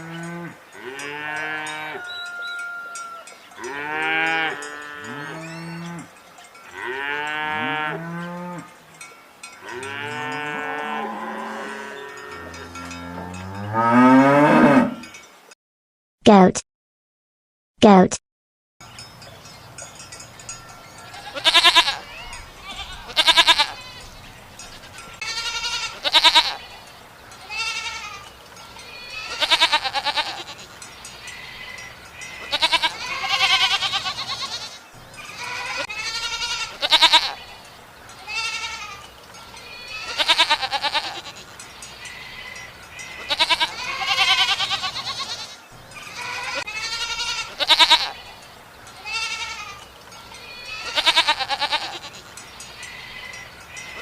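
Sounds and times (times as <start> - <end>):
goats bleating: 21.0 - 24.1, 24.7 - 48.4, 49.0 - 54.0.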